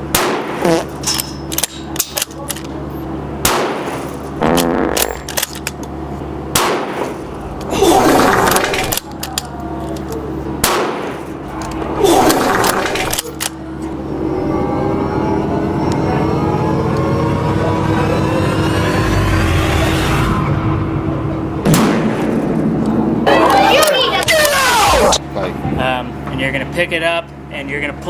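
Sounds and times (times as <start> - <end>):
loud gunshots: 0.1 - 1.0, 3.4 - 4.1, 6.5 - 7.2, 10.6 - 11.3, 21.6 - 23.2.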